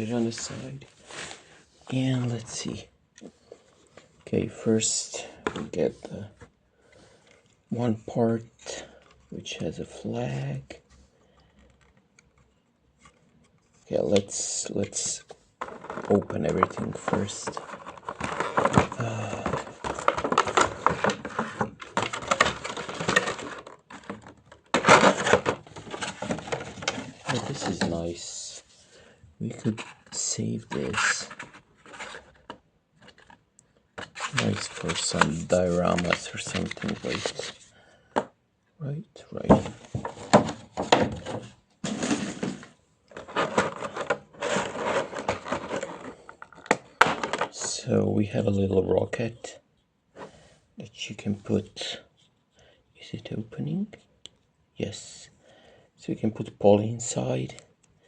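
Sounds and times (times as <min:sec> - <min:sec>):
plastic packaging crinkling: 0:15.6 - 0:27.9
plastic packaging rustling: 0:15.6 - 0:28.4, 0:34.0 - 0:37.6, 0:39.6 - 0:47.8.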